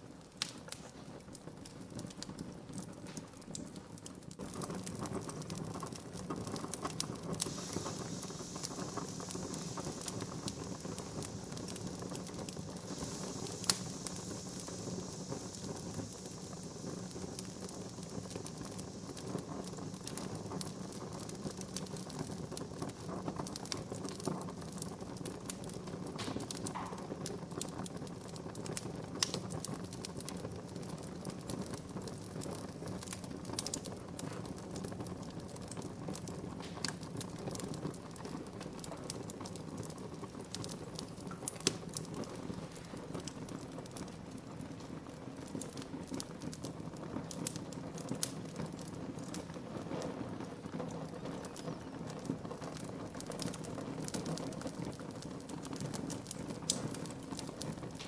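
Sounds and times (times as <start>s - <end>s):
soft hiss: 0.0s - 55.2s
wood fire crackling: 0.0s - 58.0s
loud pop: 26.2s - 27.2s.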